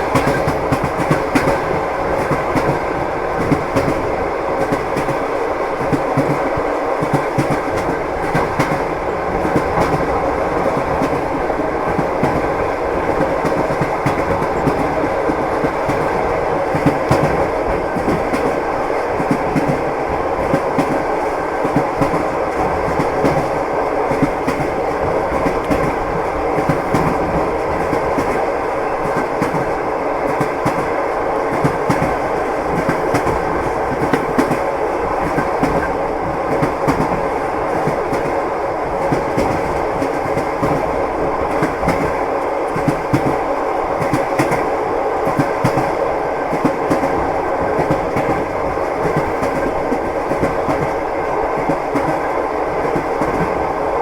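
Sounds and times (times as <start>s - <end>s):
train wheels clacking over rail joints: 0.0s - 43.4s.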